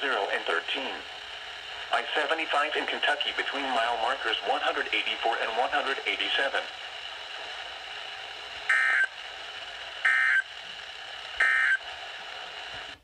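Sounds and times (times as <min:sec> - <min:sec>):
radio hiss: 0:00.0 - 0:13.0
digital data tone warble: 0:08.7 - 0:09.1, 0:11.4 - 0:11.8.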